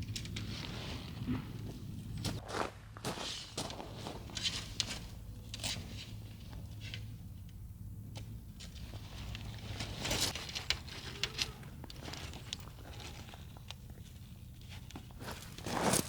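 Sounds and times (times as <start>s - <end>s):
crunching steps in snow: 2.2s - 4.5s, 15.2s - 16.0s.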